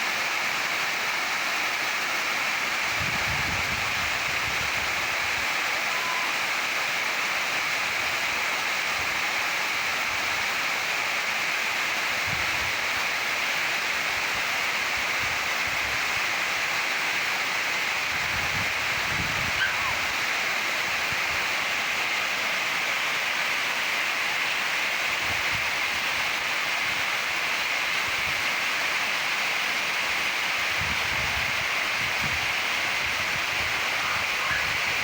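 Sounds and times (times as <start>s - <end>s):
waterfall rushing: 0.1s - 12.2s, 16.1s - 35.0s.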